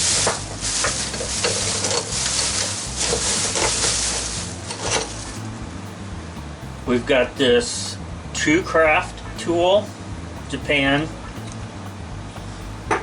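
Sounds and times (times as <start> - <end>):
steady hissing rustle: 0.0 - 8.0.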